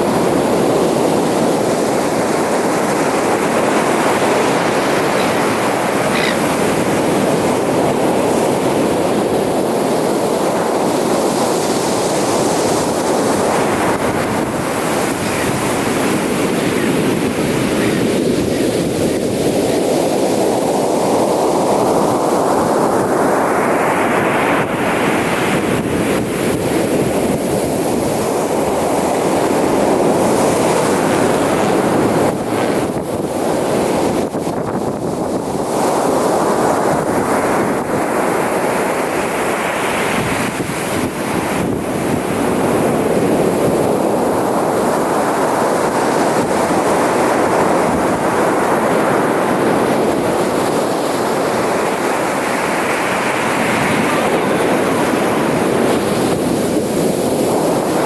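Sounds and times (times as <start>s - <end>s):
ocean surf washing up beach: 0.0s - 58.0s.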